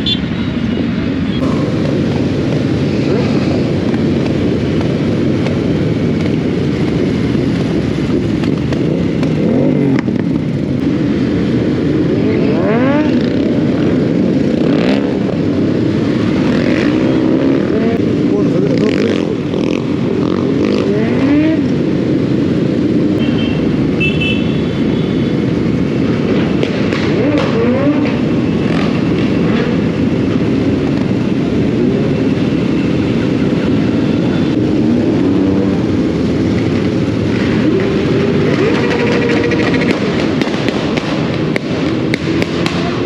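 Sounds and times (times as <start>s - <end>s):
dense low rush: 1.0s - 24.0s
motorcycle engine revving: 1.3s - 21.9s, 26.0s - 43.0s.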